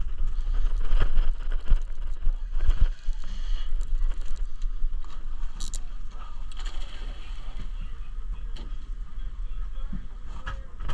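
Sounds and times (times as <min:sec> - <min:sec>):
wind rumble: 0:00.0 - 0:06.2
boat noise: 0:00.0 - 0:10.9.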